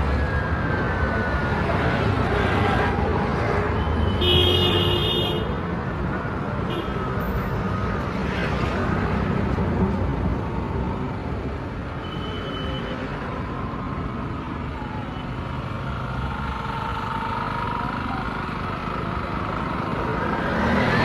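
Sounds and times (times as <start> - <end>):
road traffic engine noise: 0.0 - 21.0
vehicle horn tooting: 4.1 - 5.5.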